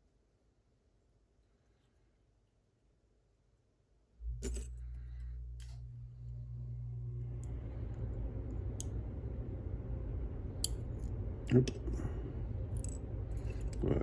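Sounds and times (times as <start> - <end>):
low steady hum: 0.0 - 14.0
small metal clicks and clinks: 4.4 - 5.0.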